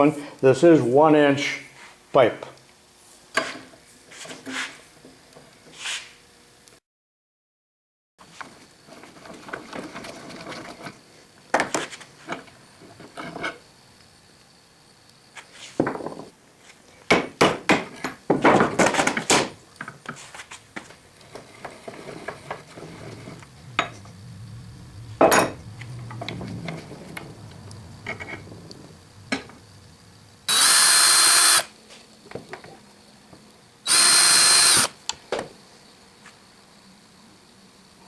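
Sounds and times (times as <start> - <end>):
faint low hum: 21.2 - 30.9.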